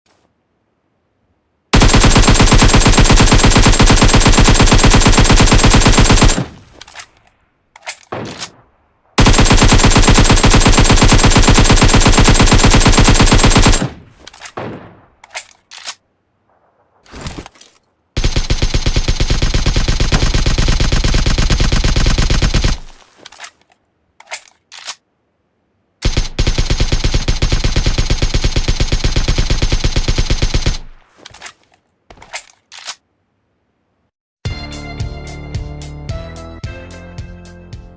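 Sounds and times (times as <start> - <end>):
automatic rifle fire bursts: 1.8 - 7.0, 9.2 - 15.4, 18.2 - 23.0, 26.0 - 31.0
single gunshots: 1.8 - 7.2, 7.8 - 15.6.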